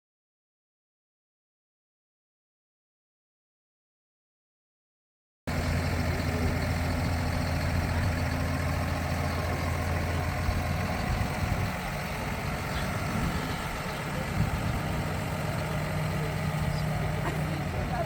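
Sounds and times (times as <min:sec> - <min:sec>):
vehicle engine humming: 0:05.5 - 0:18.0.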